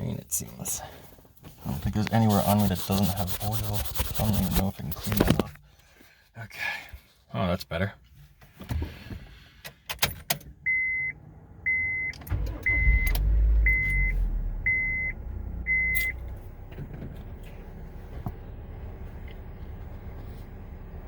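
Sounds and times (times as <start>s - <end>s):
car engine cranking and starting: 10.4s - 21.0s
car warning chime beeping: 10.6s - 16.4s
car engine idling: 12.2s - 21.0s.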